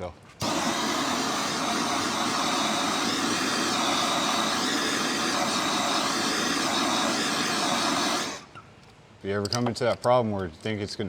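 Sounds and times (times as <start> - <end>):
gas torch hissing: 0.0 - 8.6.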